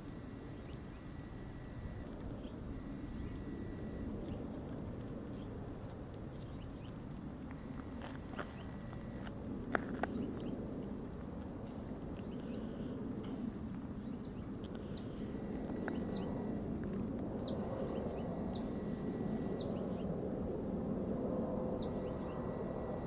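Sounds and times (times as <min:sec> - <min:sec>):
low outdoor rumble: 0:00.0 - 0:23.0
songbird chirping: 0:00.4 - 0:04.4, 0:14.0 - 0:16.6, 0:17.4 - 0:18.8, 0:21.8 - 0:22.6.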